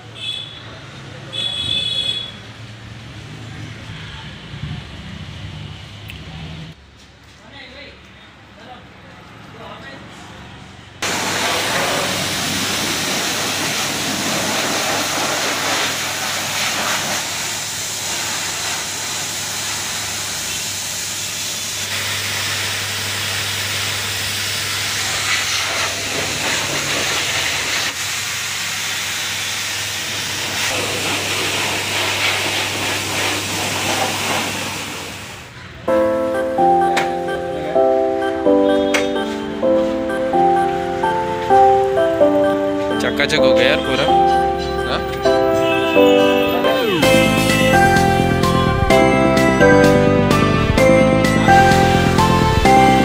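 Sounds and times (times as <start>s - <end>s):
pump motor humming: 11.0s - 15.2s
pressure washer water jet hissing: 11.0s - 35.5s.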